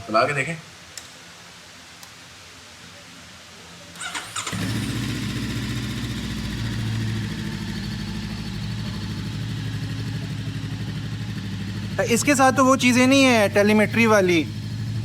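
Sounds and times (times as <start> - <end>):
motorcycle engine starting and idling: 4.0 - 15.0.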